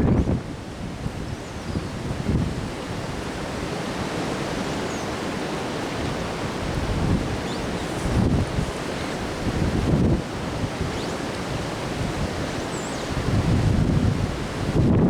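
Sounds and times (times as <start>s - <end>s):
wind rushing: 0.0s - 0.6s
wind gusts buffeting microphone: 0.0s - 15.0s.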